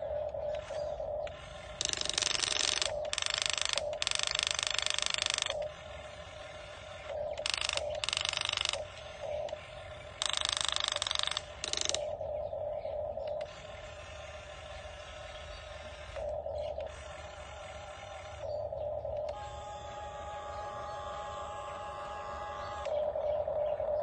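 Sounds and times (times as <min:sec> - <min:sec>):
steady hum: 0:00.0 - 0:24.0
mechanical clicking and grinding: 0:00.2 - 0:05.8, 0:07.0 - 0:09.6, 0:10.2 - 0:12.2.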